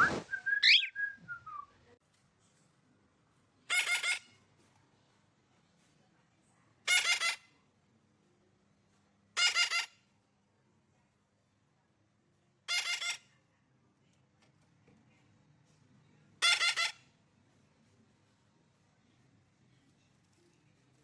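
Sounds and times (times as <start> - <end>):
harsh bird calls: 0.0 - 1.0.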